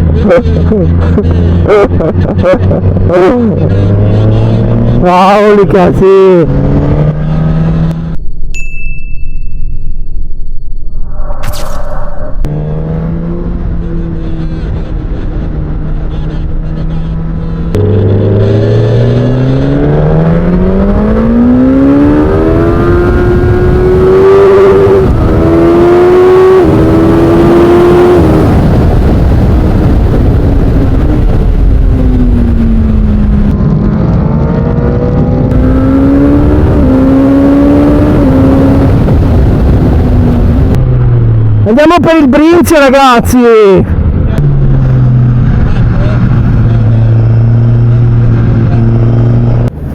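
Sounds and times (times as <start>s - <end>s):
motorcycle engine shifting gears: 12.4s - 41.7s
wind rush: 18.4s - 41.7s.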